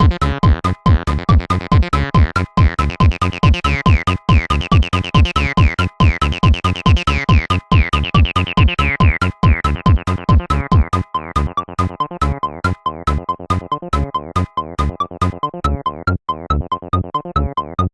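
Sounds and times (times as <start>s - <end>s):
synthesizer stabs: 0.0s - 16.7s
hard electronic dance beat: 0.0s - 17.9s.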